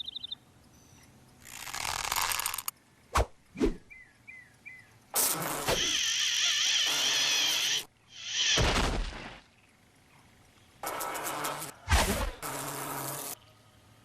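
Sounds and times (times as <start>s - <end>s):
insect wings buzzing: 1.4s - 2.7s, 5.1s - 9.4s, 10.8s - 13.4s.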